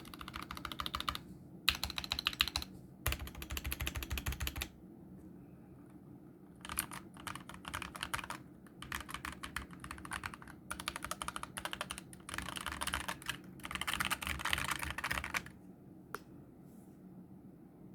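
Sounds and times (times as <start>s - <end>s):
mechanical keyboard typing: 0.0s - 4.7s, 6.5s - 15.5s.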